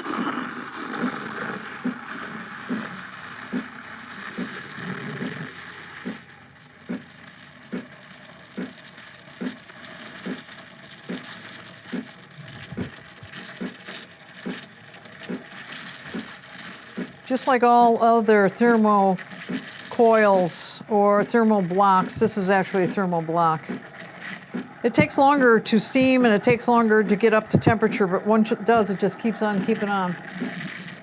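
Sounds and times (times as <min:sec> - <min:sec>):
steam wand hissing: 0:00.0 - 0:06.3
low regular pulse: 0:21.0 - 0:31.0.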